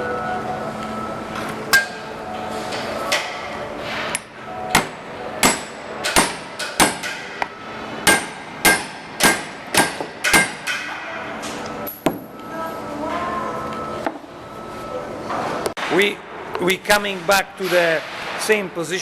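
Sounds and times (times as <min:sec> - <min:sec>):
hammer striking metal tool: 0:04.1 - 0:11.0.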